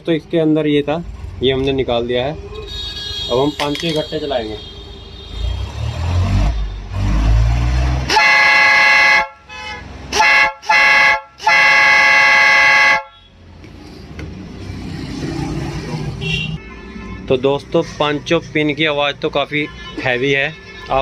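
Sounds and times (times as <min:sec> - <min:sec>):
electric air horn blasts: 0:08.1 - 0:13.3.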